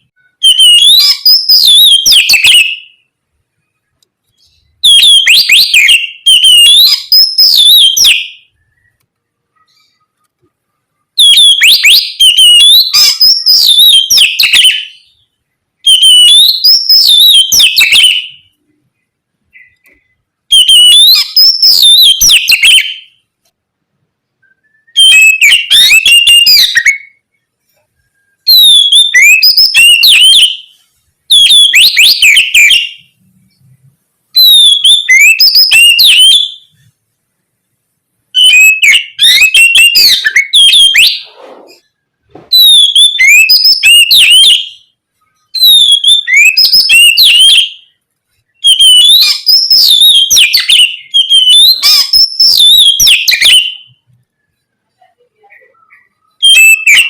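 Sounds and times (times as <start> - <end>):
bird singing whistled phrases: 0.2 - 3.0, 4.3 - 9.0, 11.2 - 18.6, 19.5 - 23.2, 24.4 - 27.2, 28.0 - 33.2, 34.4 - 36.7, 38.4 - 41.4, 42.5 - 47.9, 48.6 - 54.0, 55.6 - 57.0.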